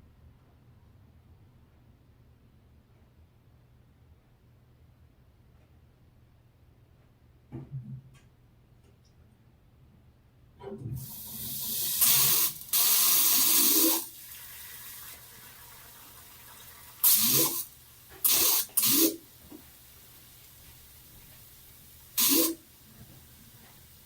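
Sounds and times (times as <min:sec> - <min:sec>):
water spraying from pipe: 0:11.0 - 0:20.9, 0:21.8 - 0:24.0.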